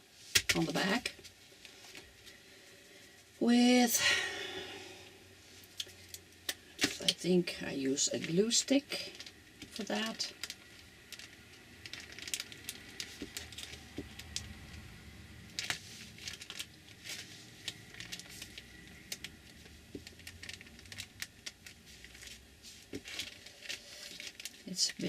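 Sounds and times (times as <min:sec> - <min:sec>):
paper rustling and crinkling: 0:09.0 - 0:14.4, 0:15.6 - 0:25.0.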